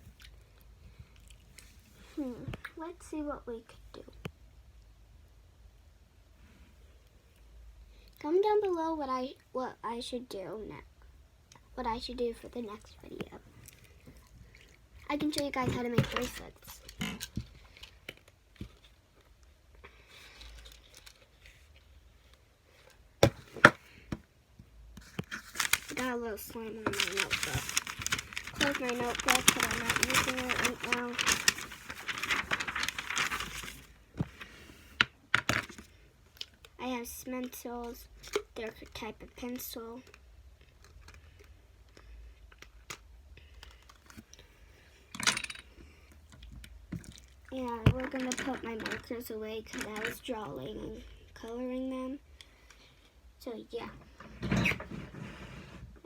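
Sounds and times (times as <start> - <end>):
plastic items clattering: 15.0 - 19.0, 25.0 - 34.5, 47.8 - 50.3
faint rustling: 25.0 - 35.0
plastic items clicking: 26.8 - 33.9, 47.8 - 49.1.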